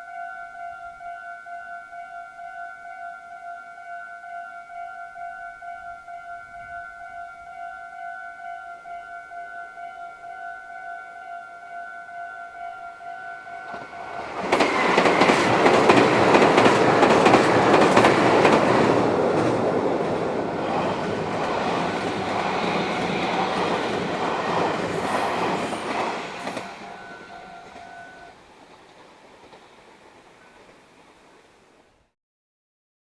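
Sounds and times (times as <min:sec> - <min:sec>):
steady high tone: 0:00.0 - 0:28.4
electric train wheels clattering: 0:13.5 - 0:31.3.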